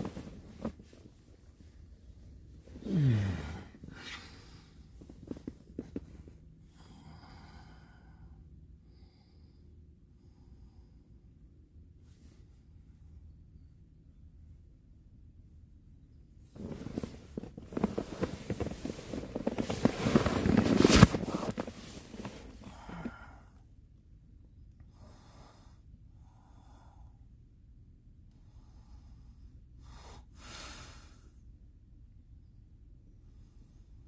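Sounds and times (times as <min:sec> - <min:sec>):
tent fabric flapping and rattling: 0:00.0 - 0:01.3, 0:16.6 - 0:23.1
faint rustles: 0:00.0 - 0:06.4, 0:16.5 - 0:23.3.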